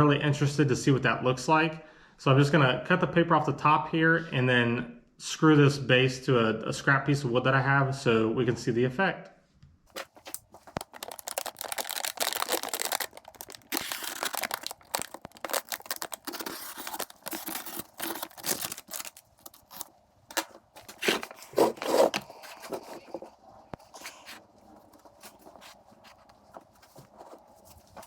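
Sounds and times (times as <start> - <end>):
paper wrapping tearing: 9.9 - 23.2.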